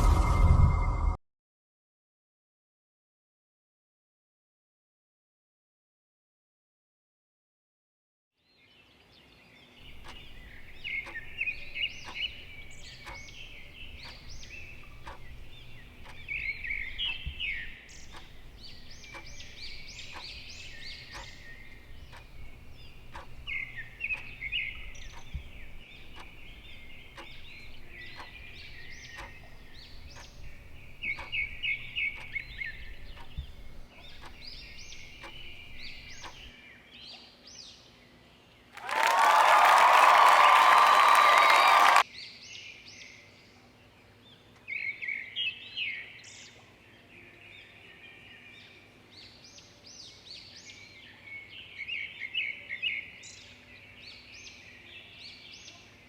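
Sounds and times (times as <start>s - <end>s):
birds chattering trills: 9.8s - 36.5s.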